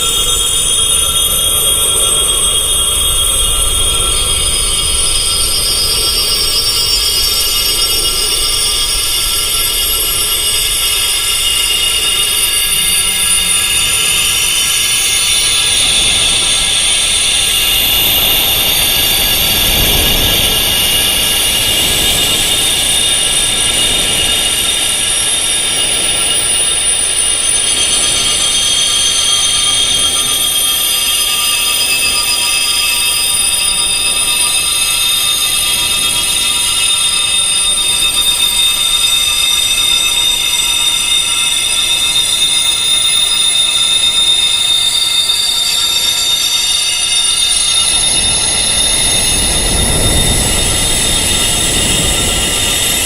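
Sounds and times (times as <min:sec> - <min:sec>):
wind chimes ringing: 0:00.0 - 0:53.0.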